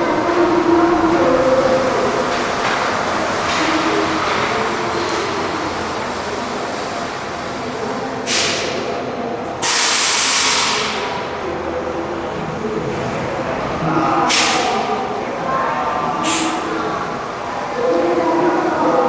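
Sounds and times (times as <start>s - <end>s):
trolleybus running hum: 0.0s - 19.0s
compressed-air hiss: 9.6s - 10.9s.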